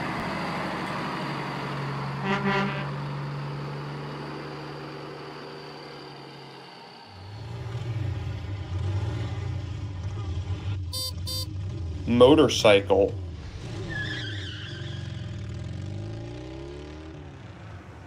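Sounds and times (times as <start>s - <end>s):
engine drone: 0.0s - 14.2s
truck horn toots: 2.2s - 3.0s, 10.9s - 11.5s.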